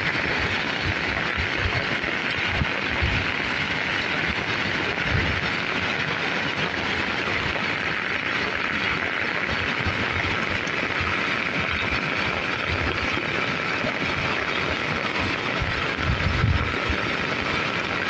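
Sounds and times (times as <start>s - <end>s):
steady rain hiss: 0.0s - 18.0s.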